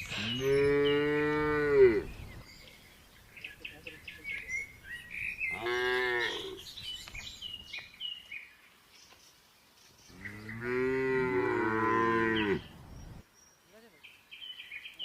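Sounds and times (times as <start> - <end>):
small birds chirping: 0.0 - 15.0
cow mooing: 0.1 - 2.1, 5.5 - 6.6, 10.2 - 12.7.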